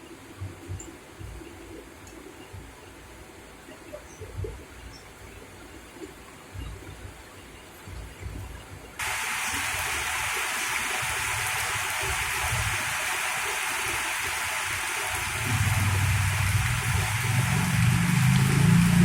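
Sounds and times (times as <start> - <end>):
heavy rain pouring: 9.0 - 19.0
low rumbles: 15.3 - 19.0.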